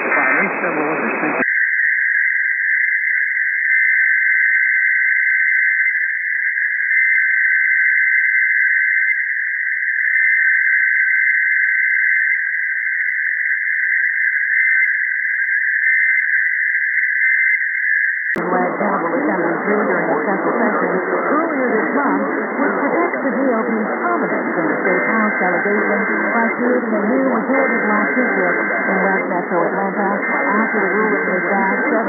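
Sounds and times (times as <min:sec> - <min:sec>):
electronic data tone: 0:18.1 - 0:32.0.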